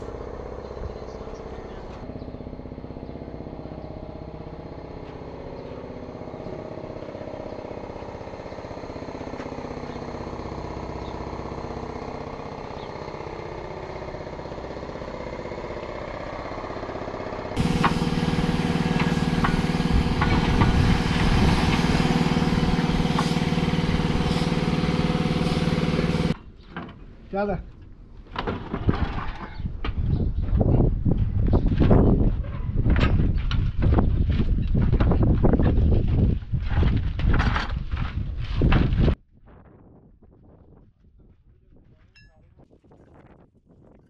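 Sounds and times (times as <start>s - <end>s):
loud engine with knocks: 0.0s - 16.9s, 17.5s - 27.0s
engine running: 0.0s - 26.5s.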